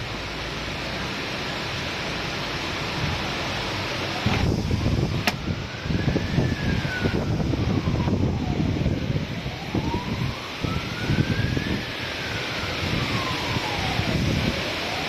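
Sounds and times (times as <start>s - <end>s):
heavy rain hiss: 0.0s - 15.0s
siren wailing: 2.9s - 15.0s
wind buffeting microphone: 4.1s - 15.0s.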